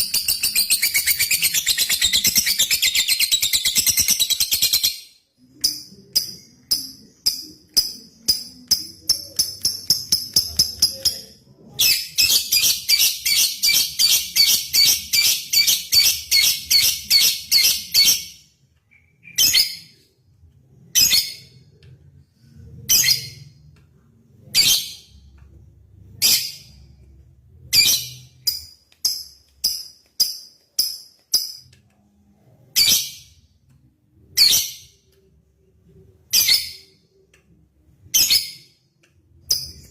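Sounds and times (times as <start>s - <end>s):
lovebird chirping and trilling: 0.0s - 11.2s, 11.8s - 20.1s, 27.6s - 31.5s.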